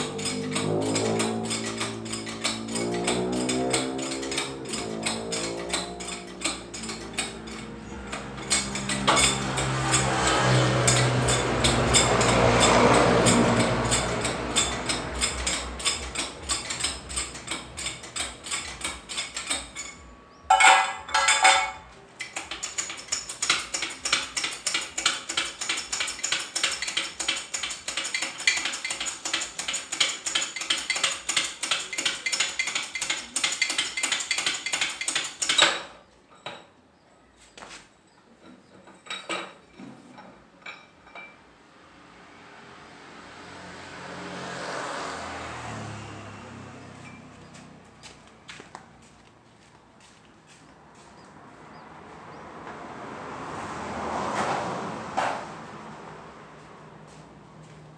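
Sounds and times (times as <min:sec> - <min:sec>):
ratchet clicking: 0:00.0 - 0:20.1, 0:22.2 - 0:35.8
loose metal parts clinking: 0:00.0 - 0:36.6.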